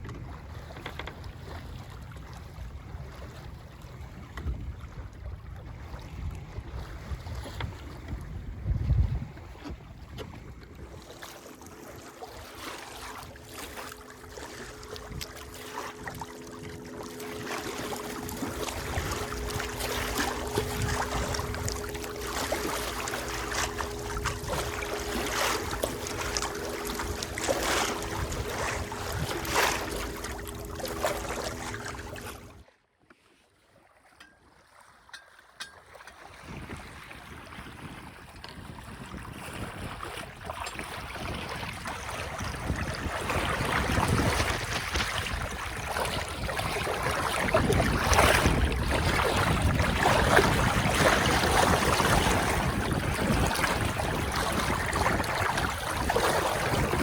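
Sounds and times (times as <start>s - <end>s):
water rushing along boat hull: 0.0s - 57.0s
wind on microphone: 2.2s - 32.6s, 36.4s - 57.0s
steady low hum: 10.8s - 32.6s.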